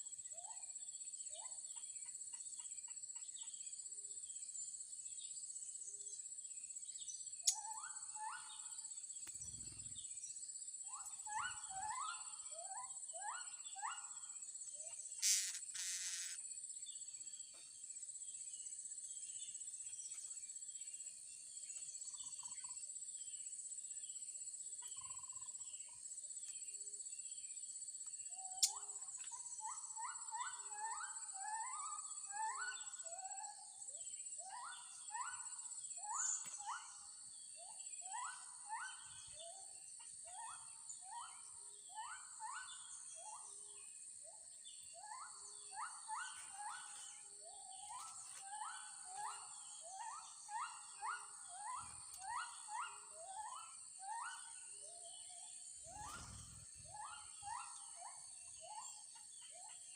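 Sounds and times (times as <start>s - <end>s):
faint chirping: 6.1s - 59.9s
high insect drone: 15.0s - 16.9s.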